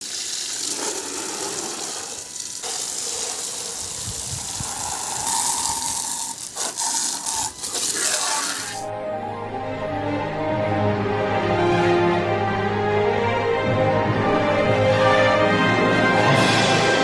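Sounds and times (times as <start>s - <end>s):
water spraying: 0.0s - 8.9s.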